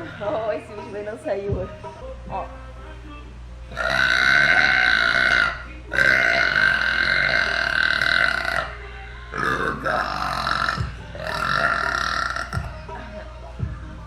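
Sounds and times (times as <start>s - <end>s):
woman burping: 3.7s - 8.8s, 9.4s - 12.8s.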